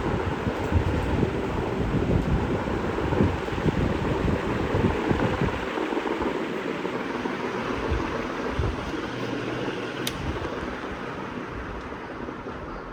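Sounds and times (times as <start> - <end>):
ceiling fan airflow rushing: 0.0 - 12.9
sharp click: 10.0 - 10.3.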